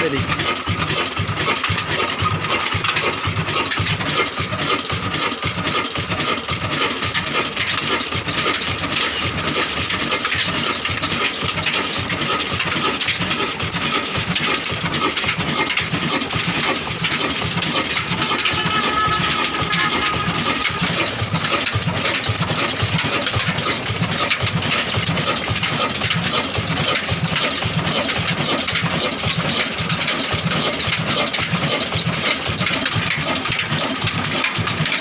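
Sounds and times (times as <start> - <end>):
diesel engine running: 0.0 - 35.0
faint high tone: 18.4 - 21.0.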